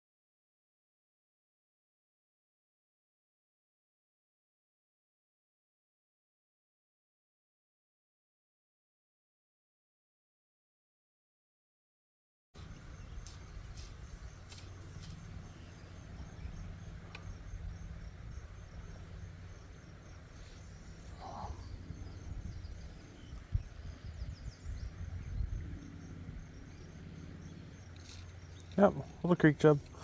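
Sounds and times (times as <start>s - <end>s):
faint clicks: 12.6s - 17.6s
low rumble: 12.6s - 29.2s
insects chirping: 12.6s - 30.0s.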